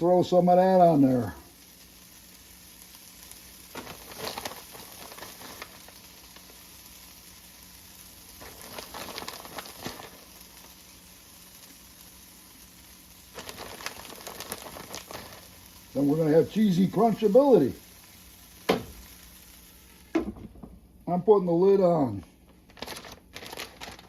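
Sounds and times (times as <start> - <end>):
potatoes sizzling in a pan: 0.0 - 24.0
cheese shaken onto potatoes: 13.4 - 15.5.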